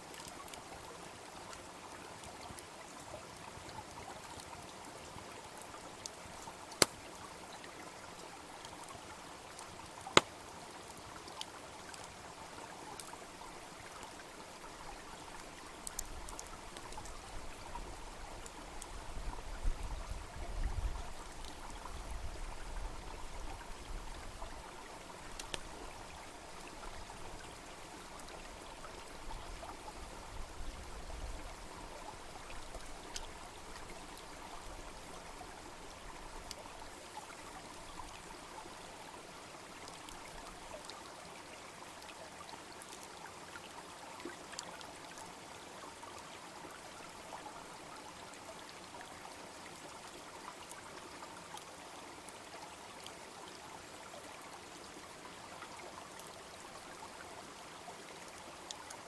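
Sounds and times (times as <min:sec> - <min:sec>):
brook babbling: 0:00.0 - 0:59.0
wood fire crackling: 0:06.8 - 0:07.0, 0:25.3 - 0:25.7.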